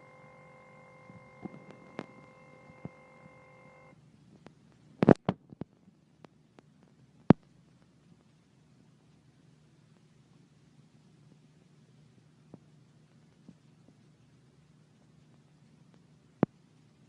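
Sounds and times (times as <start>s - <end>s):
steady electronic tone: 0.0s - 3.9s.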